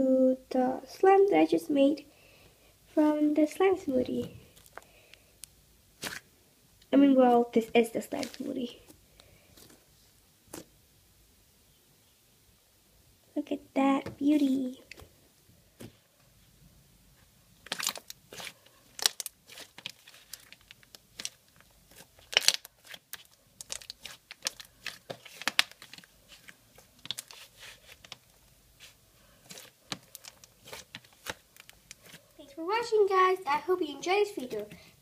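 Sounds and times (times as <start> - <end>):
hands squishing slime: 6.0 - 6.3, 7.7 - 9.0, 17.6 - 32.4.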